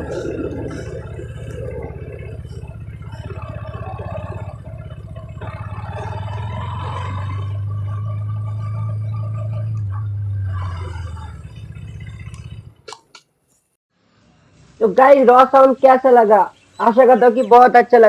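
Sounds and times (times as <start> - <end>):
motorcycle engine exhaust note: 0.0 - 12.9.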